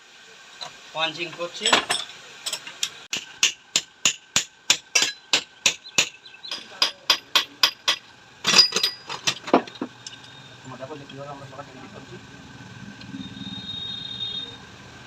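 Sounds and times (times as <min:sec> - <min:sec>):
hammer striking steel: 0:03.1 - 0:09.0.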